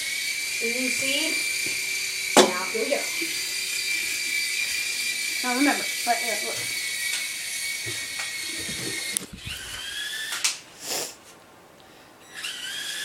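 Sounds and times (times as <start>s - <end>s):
small electric motor whining: 0.0s - 11.1s, 12.2s - 13.0s
sharp knocks: 2.4s - 2.7s.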